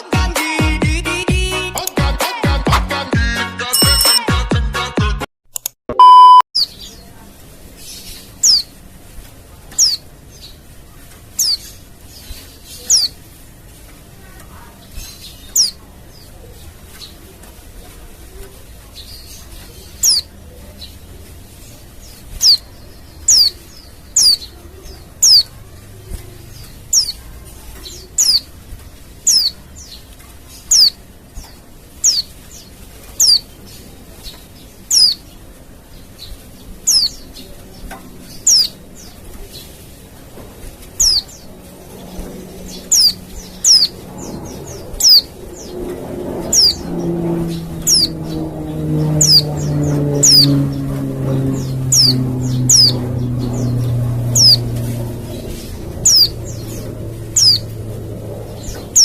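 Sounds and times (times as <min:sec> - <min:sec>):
low hum: 0:40.2 - 0:59.0.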